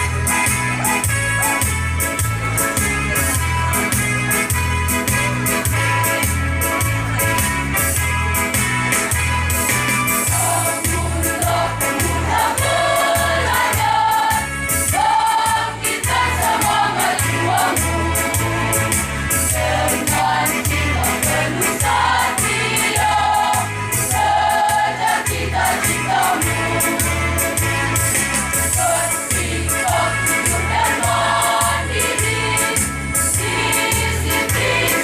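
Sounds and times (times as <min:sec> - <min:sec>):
instrumental accompaniment: 0:00.0 - 0:35.0
choir singing a march: 0:10.2 - 0:28.0, 0:28.7 - 0:35.0.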